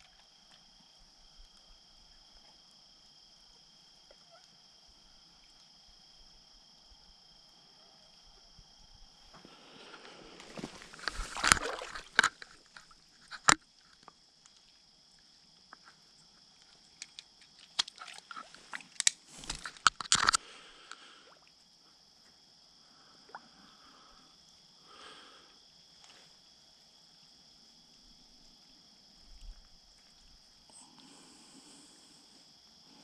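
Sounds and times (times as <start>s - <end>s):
crickets trilling: 0.0s - 33.0s
rustling or sloshing handling noises: 10.4s - 13.6s, 17.0s - 20.4s
handling knocks and clicks: 17.0s - 20.4s.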